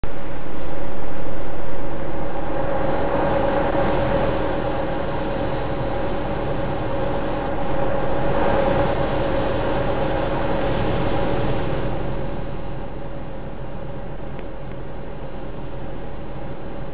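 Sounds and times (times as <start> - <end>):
air conditioner fan rush: 0.0 - 16.9
mechanical hum: 0.0 - 16.9.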